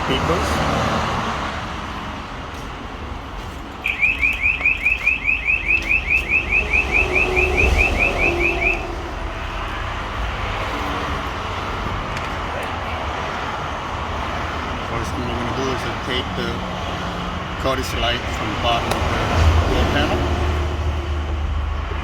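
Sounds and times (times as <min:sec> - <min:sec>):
low traffic rumble: 0:00.0 - 0:22.0
car alarm chirping: 0:03.8 - 0:09.0.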